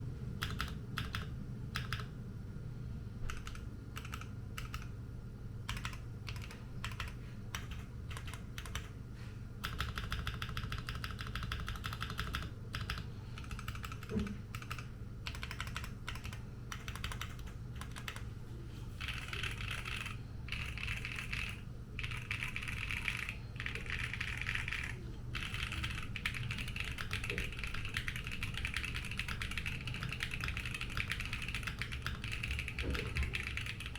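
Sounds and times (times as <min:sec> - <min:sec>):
mechanical keyboard typing: 0:00.4 - 0:02.1, 0:03.3 - 0:04.9, 0:05.7 - 0:08.9, 0:09.6 - 0:18.2, 0:19.0 - 0:33.9.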